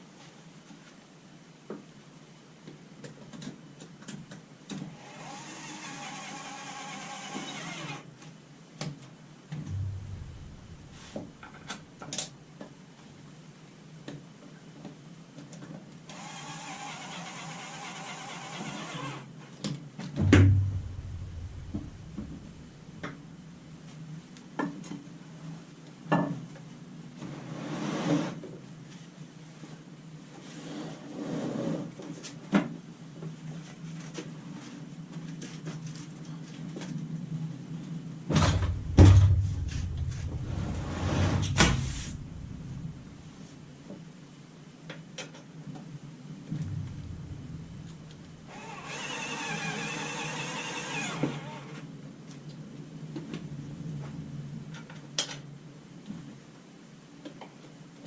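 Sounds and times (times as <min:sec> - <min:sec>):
small electric motor whirring: 0:05.0 - 0:08.0, 0:16.1 - 0:19.2, 0:48.5 - 0:51.7
heavy thud: 0:09.6 - 0:11.4, 0:20.2 - 0:23.6, 0:38.3 - 0:43.6, 0:46.5 - 0:48.5.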